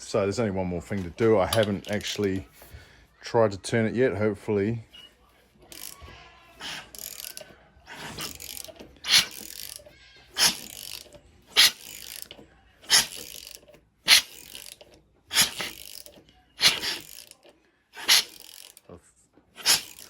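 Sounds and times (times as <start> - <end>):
ratchet turning engine over: 1.0 - 2.4, 5.0 - 18.9, 19.6 - 20.0.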